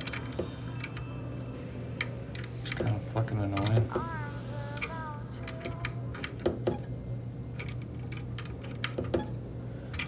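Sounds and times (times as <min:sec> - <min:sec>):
parts clicking and tapping: 0:00.0 - 0:01.0
low steady hum: 0:00.0 - 0:10.0.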